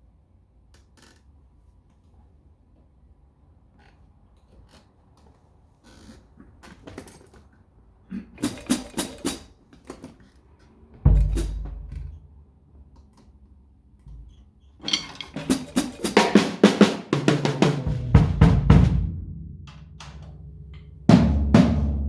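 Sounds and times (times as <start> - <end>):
drum kit playing: 11.1 - 12.2, 14.9 - 22.0
heavy low drum hit: 11.1 - 12.2, 17.2 - 22.0.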